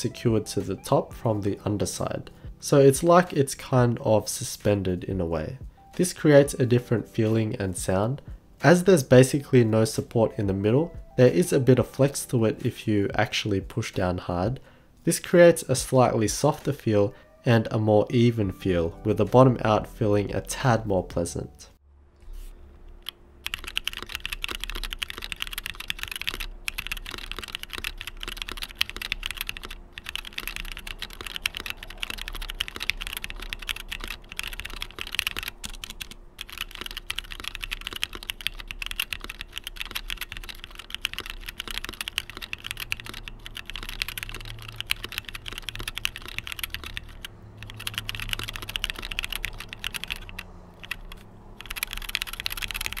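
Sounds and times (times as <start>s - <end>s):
fast mechanical keyboard typing: 23.0s - 53.0s.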